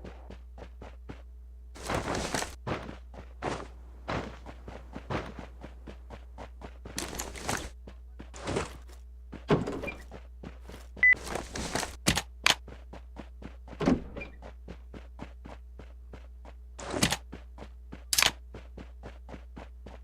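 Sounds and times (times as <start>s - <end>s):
knocks and clattering thunks: 8.4s - 10.2s, 13.7s - 14.5s.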